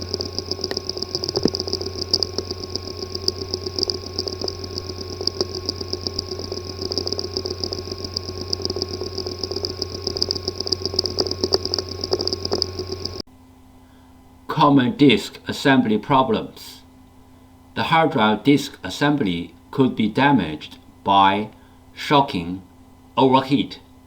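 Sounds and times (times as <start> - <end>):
hard drive humming: 0.0 - 13.2
high fluttering whine: 0.0 - 13.2
small irregular ticks: 0.0 - 13.2.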